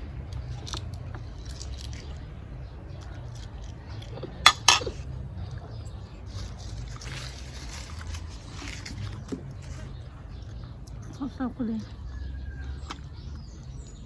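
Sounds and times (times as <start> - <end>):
cutlery clicking on plate: 4.5 - 5.0.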